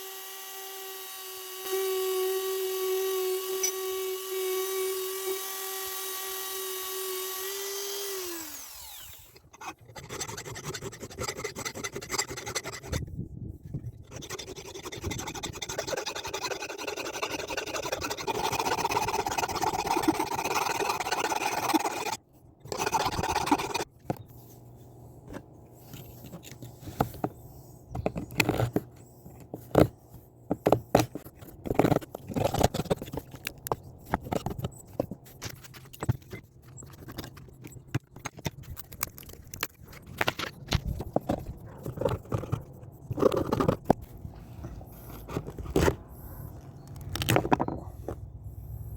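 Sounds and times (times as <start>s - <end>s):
power tool motor whining: 0.0s - 9.7s
knocks and scrapes: 22.7s - 48.3s.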